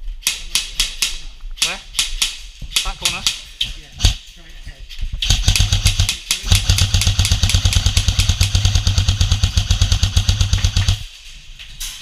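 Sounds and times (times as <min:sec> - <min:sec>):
airsoft gun firing full auto: 0:05.2 - 0:11.1.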